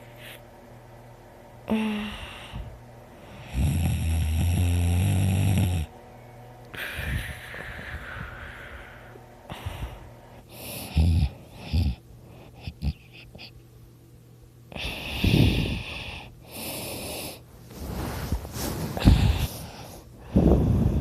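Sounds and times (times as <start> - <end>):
person snoring: 1.7 - 5.9, 6.7 - 13.5, 14.7 - 17.4, 18.9 - 21.0.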